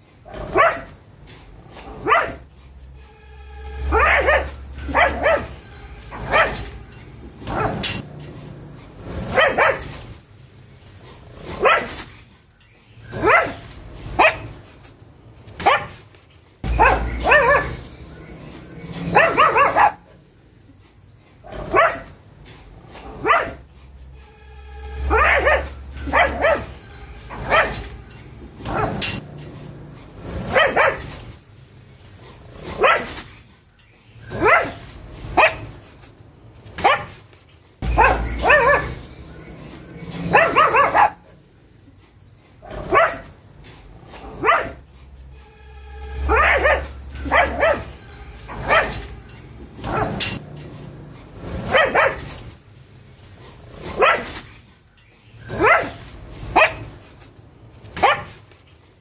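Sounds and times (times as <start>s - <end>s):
dog barking: 0.3s - 1.0s, 1.8s - 2.5s, 3.8s - 6.8s, 7.4s - 8.0s, 9.3s - 10.0s, 11.5s - 12.0s, 13.1s - 14.6s, 15.6s - 16.0s, 16.6s - 18.4s, 19.0s - 20.2s, 21.4s - 22.2s, 23.0s - 23.6s, 25.0s - 27.9s, 28.6s - 29.2s, 30.4s - 31.2s, 32.7s - 33.2s, 34.3s - 35.8s, 36.8s - 37.2s, 37.8s - 39.6s, 40.2s - 41.2s, 42.6s - 43.3s, 44.2s - 44.8s, 46.2s - 49.1s, 49.8s - 50.4s, 51.6s - 52.3s, 53.9s - 54.4s, 55.5s - 57.0s, 58.0s - 58.4s
low rumble: 1.1s - 10.3s, 16.6s - 19.8s, 22.6s - 31.4s, 37.8s - 40.7s, 43.8s - 51.8s.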